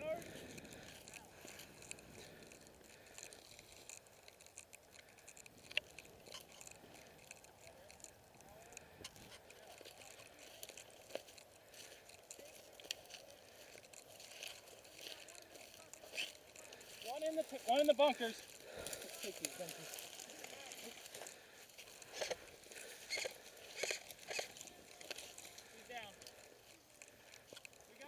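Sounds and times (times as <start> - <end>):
movement through dry leaves: 9.6 - 28.0.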